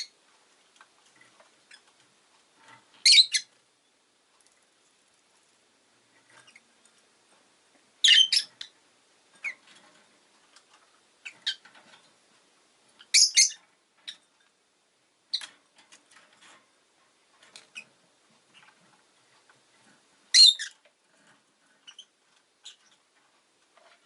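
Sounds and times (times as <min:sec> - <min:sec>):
lovebird chirping: 0:03.0 - 0:03.5, 0:08.0 - 0:08.7, 0:13.0 - 0:14.2, 0:20.3 - 0:20.8.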